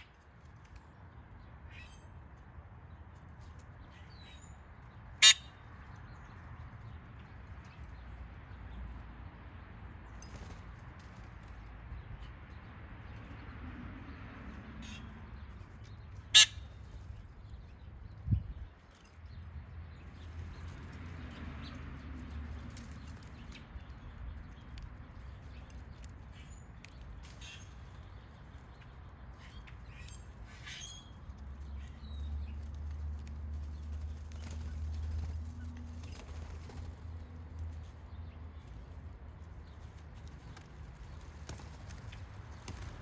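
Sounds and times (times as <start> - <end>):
birds chirping: 3.8 - 8.6, 14.8 - 21.8.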